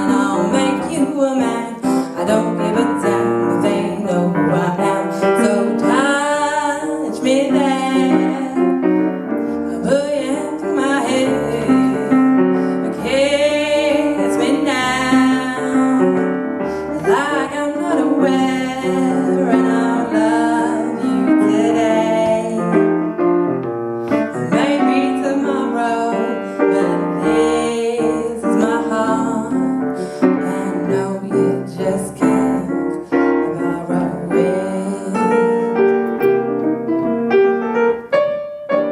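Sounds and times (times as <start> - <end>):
woman singing with vibrato: 0.0 - 23.2, 24.3 - 35.9
piano accompaniment: 0.0 - 38.9
singer breathing: 9.3 - 9.7, 16.6 - 17.0.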